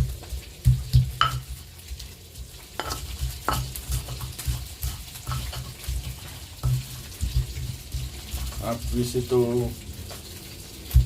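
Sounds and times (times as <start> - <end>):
pestle pounding in stone mortar: 0.0 - 1.6, 2.8 - 9.0
oil sizzling in a frying pan: 0.0 - 11.0.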